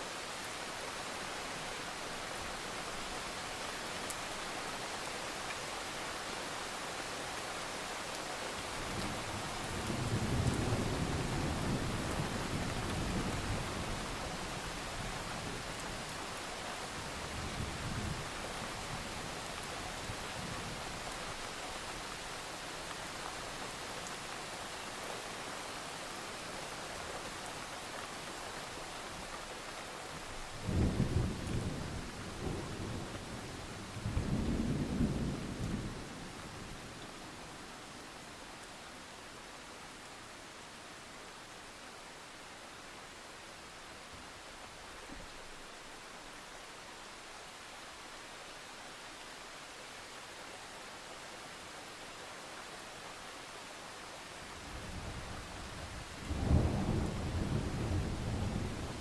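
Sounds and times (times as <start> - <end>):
rain hiss: 0.0 - 59.0
low roll of thunder: 30.6 - 36.2, 54.8 - 59.0
thunder rumbles: 55.2 - 59.0.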